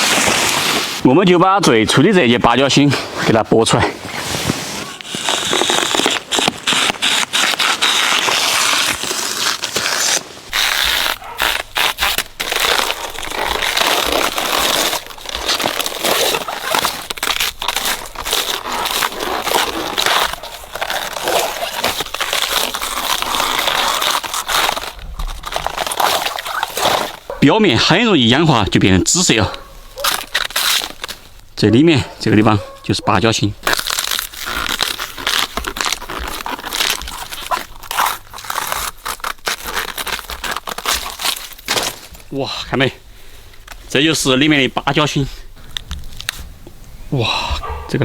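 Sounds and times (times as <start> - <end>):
plant fibres tearing and crackling: 4.8 - 31.6, 33.6 - 42.5.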